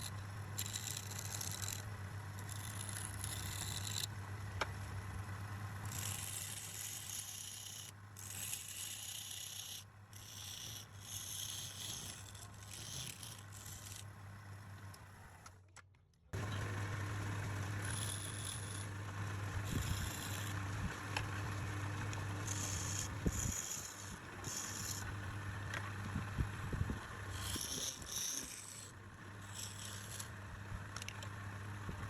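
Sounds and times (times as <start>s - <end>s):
turning tool scraping wood: 0.0s - 4.1s, 5.8s - 14.1s, 16.4s - 26.1s, 27.3s - 30.4s
wood lathe motor hum: 0.0s - 14.4s, 16.4s - 32.0s.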